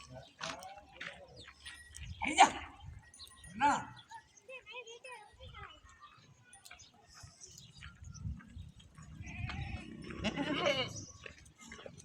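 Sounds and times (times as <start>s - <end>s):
goat bleating: 9.2s - 11.1s.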